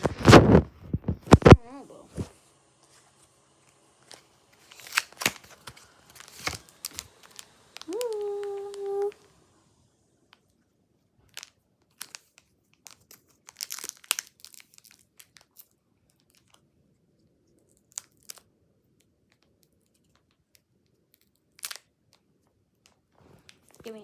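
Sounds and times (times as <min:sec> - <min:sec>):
foil wrapper crinkling: 0:00.0 - 0:01.6, 0:04.1 - 0:09.1, 0:11.2 - 0:16.6, 0:17.6 - 0:18.4, 0:21.2 - 0:22.2.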